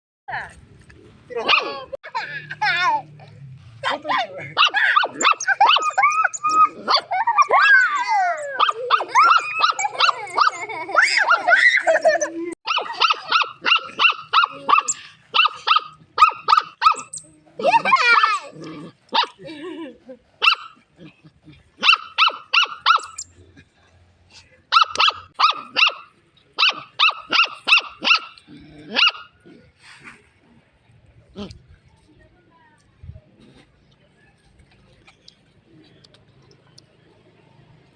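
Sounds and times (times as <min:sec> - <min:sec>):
dog yelping: 0:04.1 - 0:18.4, 0:20.4 - 0:20.8, 0:21.8 - 0:23.3, 0:24.7 - 0:29.2
dog whining: 0:04.7 - 0:12.0.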